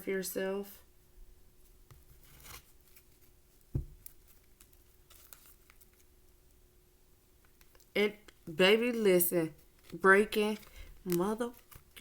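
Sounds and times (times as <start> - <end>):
faint steady hum: 0.0 - 12.0
soft thump: 3.7 - 4.0.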